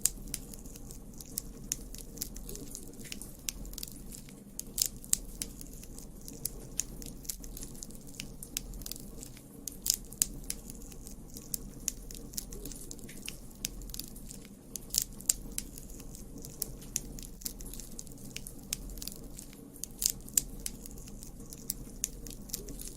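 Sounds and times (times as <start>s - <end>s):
campfire crackling: 0.0s - 22.9s.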